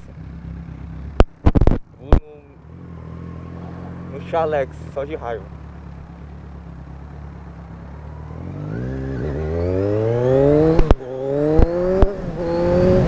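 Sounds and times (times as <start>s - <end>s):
motorcycle accelerating: 0.0s - 13.0s
sharp exhaust cracks: 1.1s - 2.3s.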